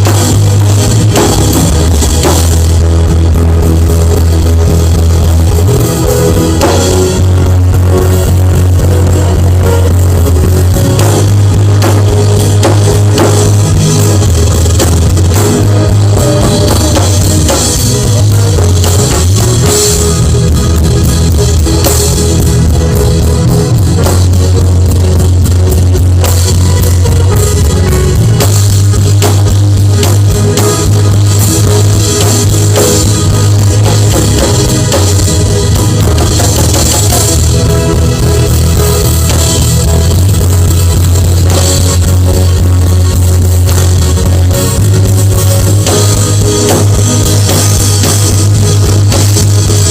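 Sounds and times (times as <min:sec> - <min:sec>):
drum kit: 0:00.0 - 0:49.9
guitar: 0:00.0 - 0:49.9
heavy bass line: 0:00.0 - 0:49.9.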